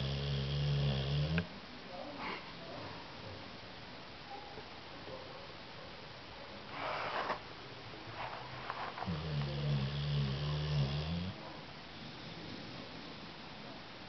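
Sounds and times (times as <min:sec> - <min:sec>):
dog snoring: 0:00.0 - 0:01.5, 0:09.0 - 0:11.4
dog snuffling: 0:08.1 - 0:11.3.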